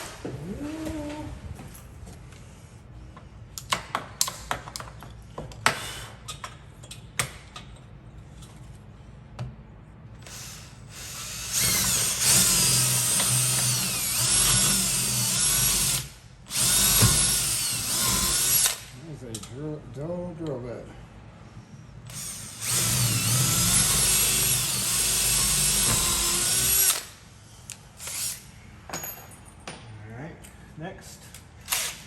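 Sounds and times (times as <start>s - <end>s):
tools clicking and knocking: 3.5s - 8.6s
power drill whining: 10.2s - 18.8s, 22.1s - 27.1s.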